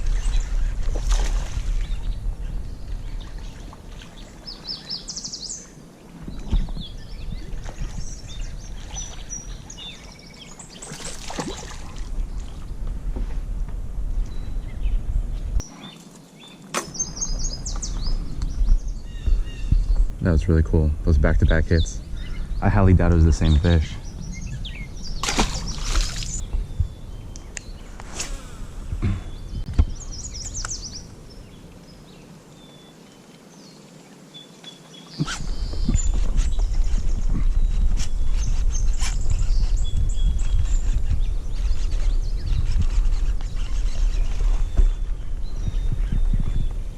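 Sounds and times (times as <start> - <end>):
small birds chirping: 0.0 - 12.8, 14.1 - 46.9
low wind rumble: 0.0 - 33.0, 35.2 - 46.9
low rumble with clicks: 12.2 - 15.6, 17.2 - 27.8.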